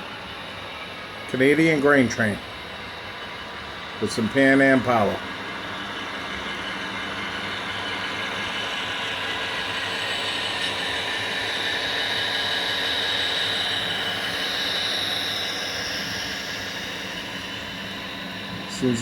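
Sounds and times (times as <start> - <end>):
model train motor whine: 0.0 - 19.0
wheels rolling on track: 1.3 - 19.0.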